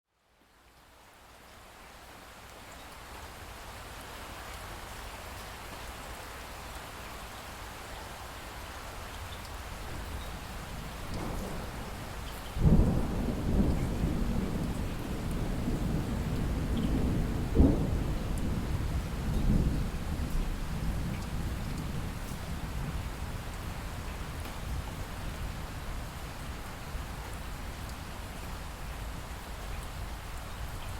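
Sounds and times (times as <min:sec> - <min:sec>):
steady rain hiss: 0:00.1 - 0:30.9
thunder rumbling: 0:10.8 - 0:23.0.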